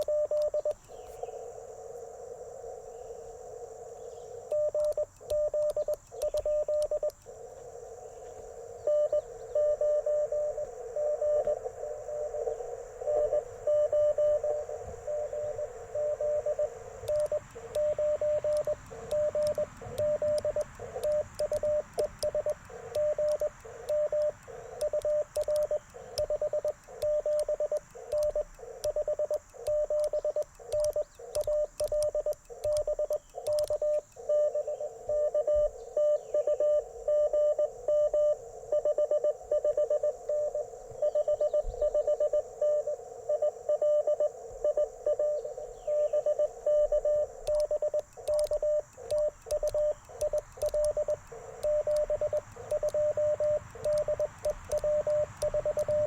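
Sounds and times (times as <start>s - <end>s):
morse code tone: 0.0s - 0.8s, 4.5s - 7.2s, 8.8s - 12.4s, 13.0s - 56.0s
radio receiver hiss: 0.0s - 36.0s, 36.9s - 56.0s
paddle key clicks: 4.8s - 7.3s, 17.0s - 34.3s, 47.4s - 56.0s.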